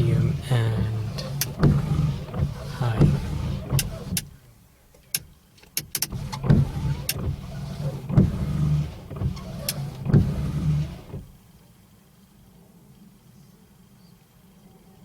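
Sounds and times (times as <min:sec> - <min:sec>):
windscreen wipers sweeping: 0:00.0 - 0:04.5, 0:05.1 - 0:11.5.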